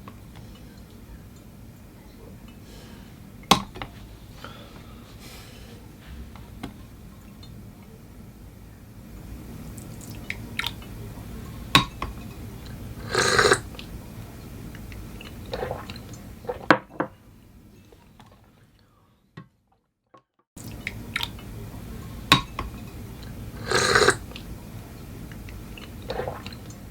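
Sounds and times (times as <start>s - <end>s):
glass and cups clinking: 13.0s - 13.8s, 23.6s - 24.3s
liquid splashing: 14.7s - 16.7s, 25.7s - 26.9s.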